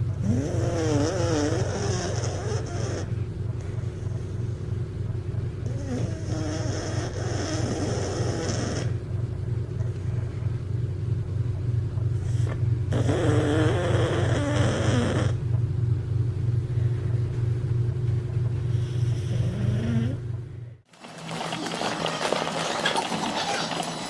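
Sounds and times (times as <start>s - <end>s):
dog snoring: 0.2s - 4.7s, 5.6s - 9.0s, 12.2s - 15.5s, 18.7s - 20.4s.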